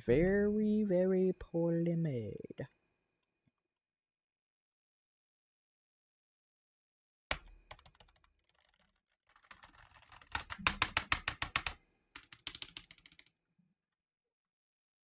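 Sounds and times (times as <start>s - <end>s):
keyboard typing: 7.3s - 13.3s.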